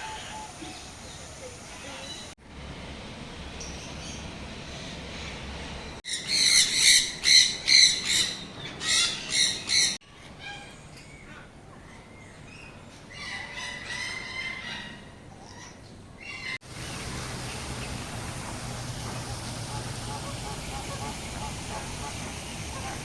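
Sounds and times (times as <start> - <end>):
birds squawking harshly: 4.0 - 11.3, 13.1 - 23.0.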